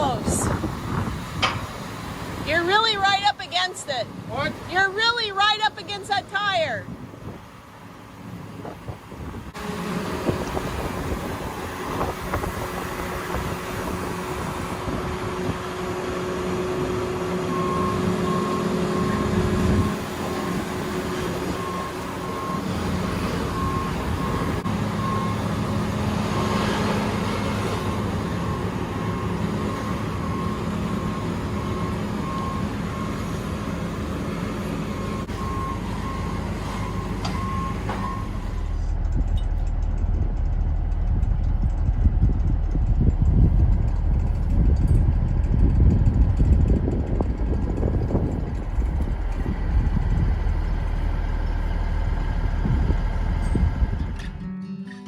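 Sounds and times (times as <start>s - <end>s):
diesel engine running: 0.0s - 54.5s
back-up alarm beeping: 16.1s - 39.4s.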